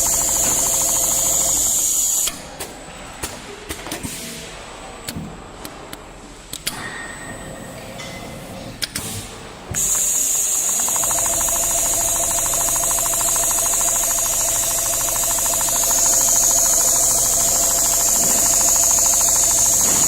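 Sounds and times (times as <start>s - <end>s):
sewing machine needle stitching: 0.0s - 2.1s, 9.8s - 20.0s.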